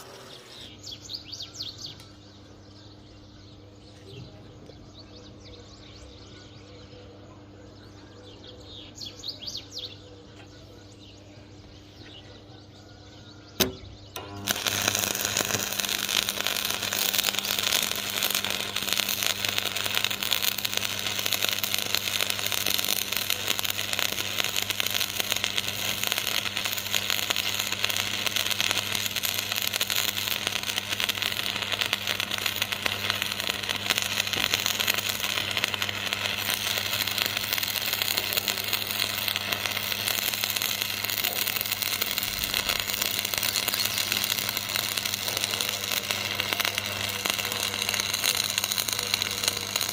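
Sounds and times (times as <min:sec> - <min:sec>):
welding arc crackling: 0:00.0 - 0:01.0, 0:13.6 - 0:49.9.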